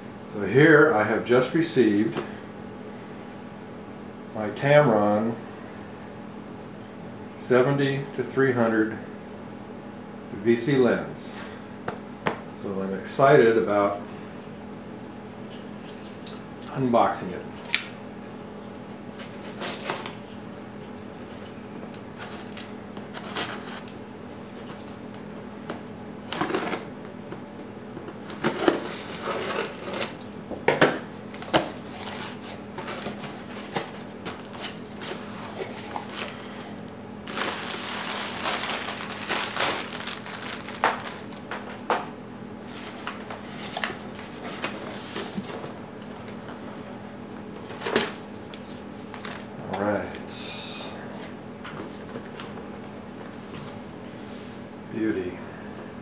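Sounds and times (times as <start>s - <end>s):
steady low hum: 0.0s - 56.0s
cardboard packaging rustling: 19.1s - 20.3s, 22.1s - 25.1s, 26.2s - 26.9s, 28.1s - 30.2s, 31.3s - 41.9s, 49.0s - 49.5s.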